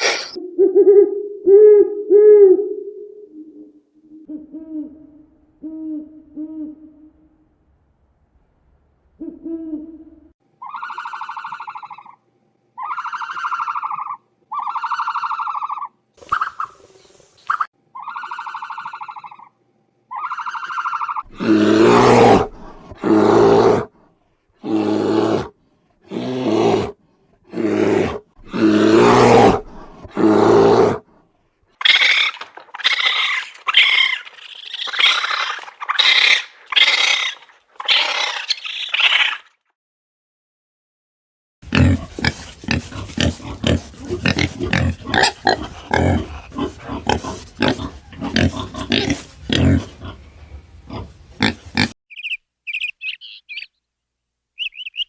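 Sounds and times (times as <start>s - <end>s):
higher-pitched animal calls: 0.0s - 5.2s, 9.2s - 12.2s, 12.8s - 16.8s, 17.5s - 23.8s, 31.8s - 39.6s
deep animal calls: 31.8s - 39.5s, 41.6s - 52.0s
fast short animal calls: 31.8s - 39.6s.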